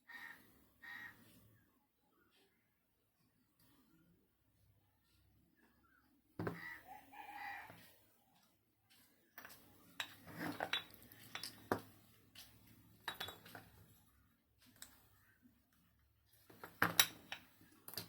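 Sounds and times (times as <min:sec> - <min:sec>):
small tools clinking and tapping: 0:08.4 - 0:14.0, 0:14.6 - 0:15.1, 0:16.3 - 0:18.0.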